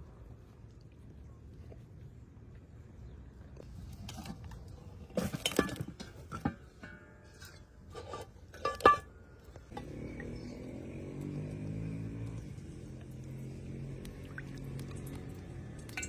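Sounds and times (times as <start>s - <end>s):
low engine-like hum: 9.4s - 16.0s.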